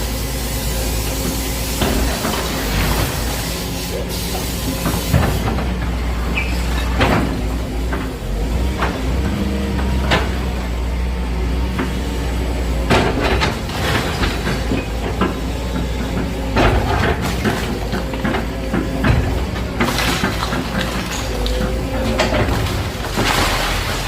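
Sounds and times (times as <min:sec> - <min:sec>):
excavator diesel engine running: 0:00.0 - 0:24.0
debris knocking and crashing: 0:12.8 - 0:24.0.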